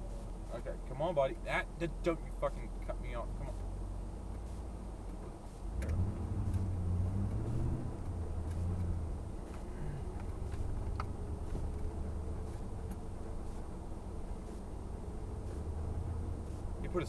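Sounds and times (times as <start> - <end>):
truck engine accelerating: 5.7 - 17.0.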